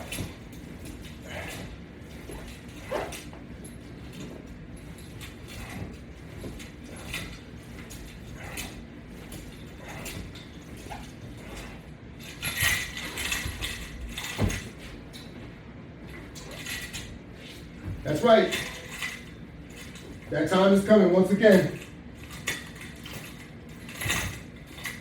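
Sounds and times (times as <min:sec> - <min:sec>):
metallic clatter: 0:00.0 - 0:15.4, 0:21.4 - 0:25.0.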